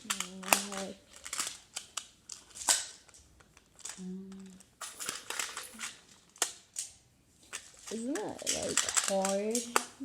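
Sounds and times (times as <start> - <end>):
plastic tiles clicking: 0.0 - 10.0
person humming: 4.0 - 4.6.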